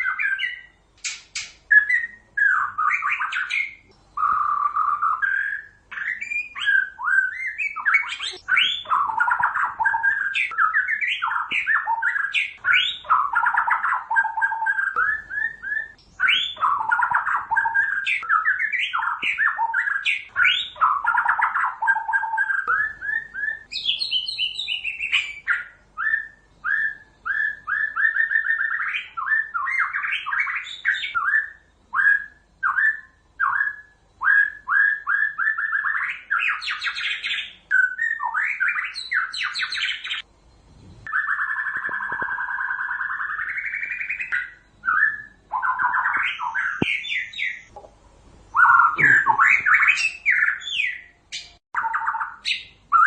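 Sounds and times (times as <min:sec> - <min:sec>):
bird singing varied song: 0:00.0 - 0:53.0.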